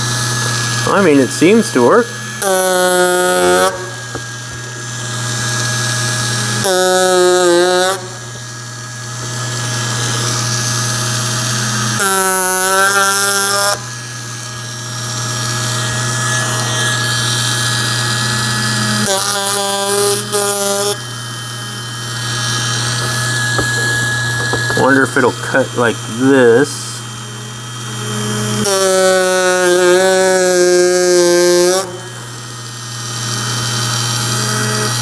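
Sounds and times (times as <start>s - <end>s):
high-pitched buzz: 0.0s - 35.0s
power carver buzzing: 0.0s - 35.0s.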